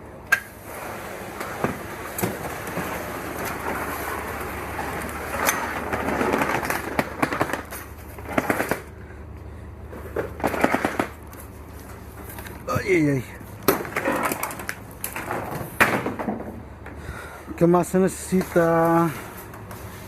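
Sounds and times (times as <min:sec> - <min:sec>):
hard wheels rolling over rough ground: 0:00.1 - 0:20.0.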